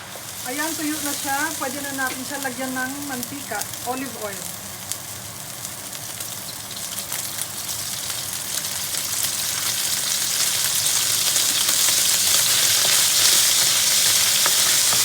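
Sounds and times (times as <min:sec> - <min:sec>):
meat sizzling in oil: 0:00.0 - 0:15.0.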